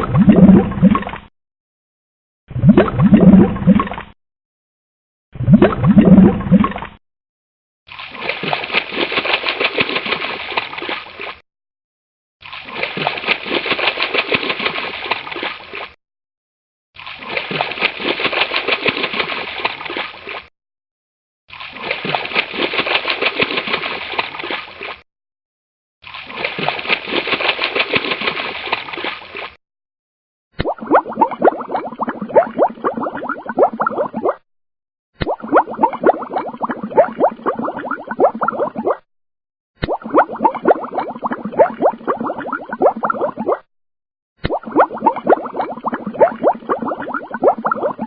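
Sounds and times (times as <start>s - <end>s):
water gurgling and splashing: 0.0s - 1.3s, 2.5s - 4.2s, 5.4s - 7.0s, 7.9s - 11.4s, 12.4s - 16.0s, 17.0s - 20.5s, 21.5s - 25.0s, 26.0s - 29.6s, 30.6s - 34.4s, 35.2s - 39.0s, 39.8s - 43.7s, 44.4s - 48.0s.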